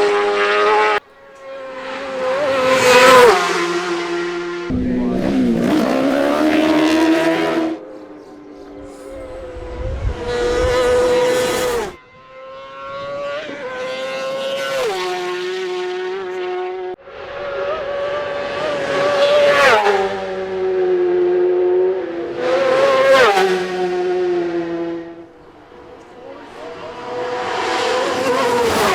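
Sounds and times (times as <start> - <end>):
motorcycle rushing past: 0.0 - 28.9
racing motorcycle engines revving: 0.0 - 28.9.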